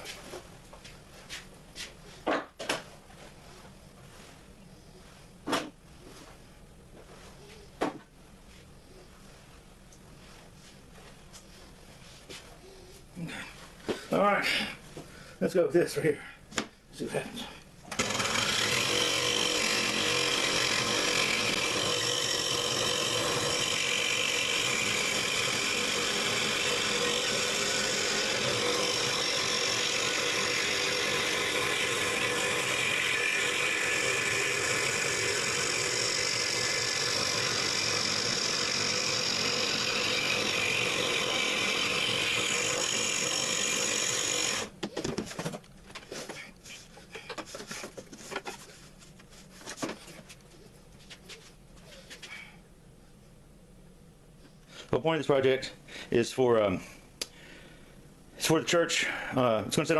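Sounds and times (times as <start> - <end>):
scroll saw cutting wood: 17.9 - 44.8.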